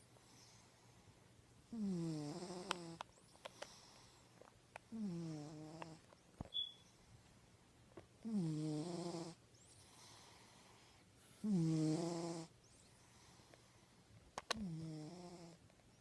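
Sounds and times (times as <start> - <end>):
cat snoring: 1.7 - 3.0, 4.9 - 6.0, 8.2 - 10.7, 11.4 - 12.5, 14.6 - 15.6
short high chirp: 6.5 - 6.9.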